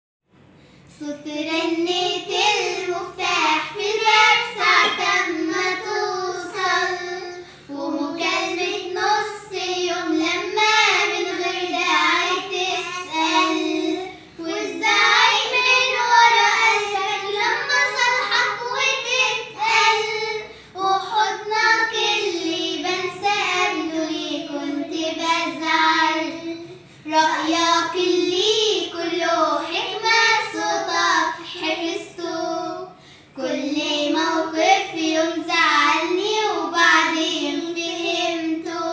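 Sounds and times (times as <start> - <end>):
short breaths: 0.5 - 0.9, 32.9 - 33.4
child singing: 1.0 - 38.9.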